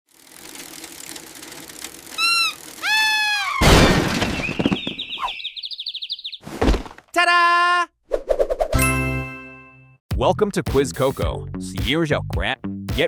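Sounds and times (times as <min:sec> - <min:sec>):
rising warbling chirp: 0:02.2 - 0:06.4
squawk-like calls: 0:02.2 - 0:06.4
loud crash: 0:03.6 - 0:04.8.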